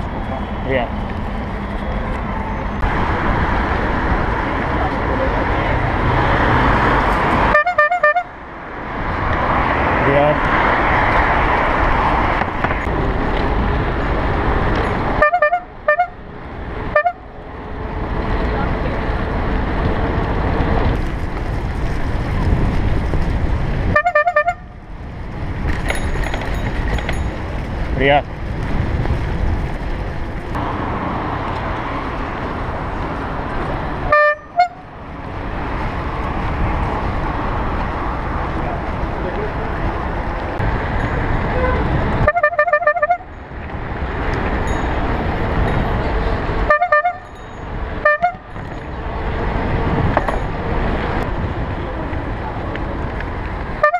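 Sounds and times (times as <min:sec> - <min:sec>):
traffic: 0:00.0 - 0:53.9
horn tooting: 0:07.4 - 0:08.4, 0:15.1 - 0:16.2, 0:16.9 - 0:17.3, 0:23.9 - 0:24.8, 0:34.0 - 0:34.9, 0:41.5 - 0:43.4, 0:46.6 - 0:47.4, 0:48.0 - 0:48.6
wind noise: 0:08.2 - 0:53.8.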